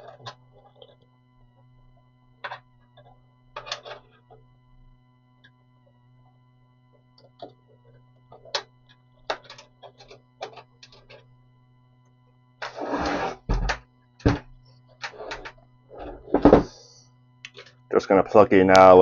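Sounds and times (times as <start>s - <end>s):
cables being handled: 0.0s - 11.4s
faint steady hum: 0.0s - 19.0s.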